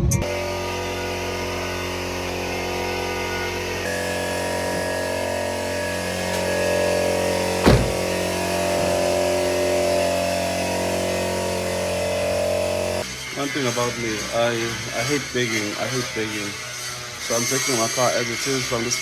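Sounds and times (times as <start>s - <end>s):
steady machine hum: 0.2s - 13.0s
single thump: 7.6s - 8.2s.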